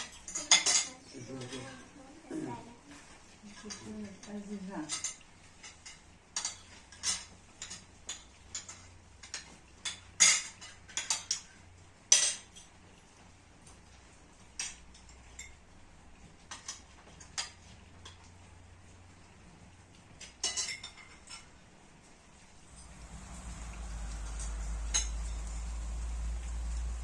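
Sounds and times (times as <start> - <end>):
cutlery clinking against plates: 0.0 - 1.7, 3.5 - 12.7, 14.6 - 15.6, 16.4 - 18.3, 20.2 - 21.6.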